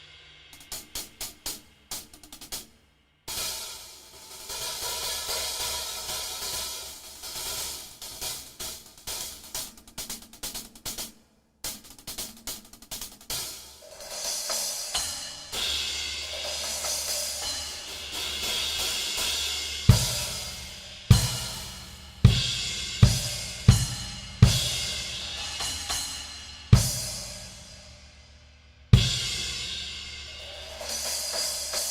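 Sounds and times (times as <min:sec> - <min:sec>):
light hi-hat and cymbal strokes: 0:00.0 - 0:31.9
ringing cymbal wash: 0:13.8 - 0:28.2
bass drum hits: 0:19.9 - 0:25.7.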